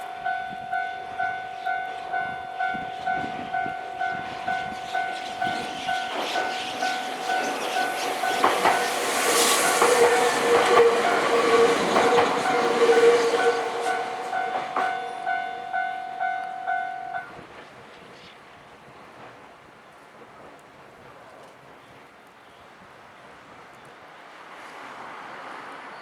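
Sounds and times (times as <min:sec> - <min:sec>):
level-crossing warning bell dinging: 0:00.0 - 0:17.5
train wheels clacking over rail joints: 0:04.6 - 0:15.3.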